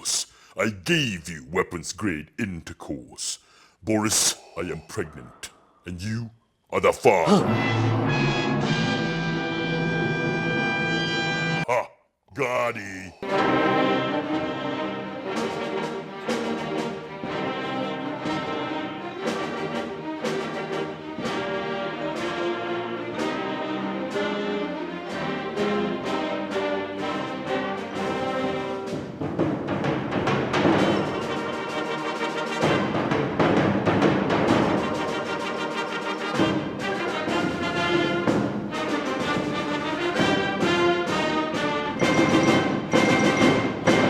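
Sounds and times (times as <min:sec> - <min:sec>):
struck accents: 0:00.0 - 0:07.6, 0:11.6 - 0:13.2
orchestral music with brass: 0:31.3 - 0:42.0.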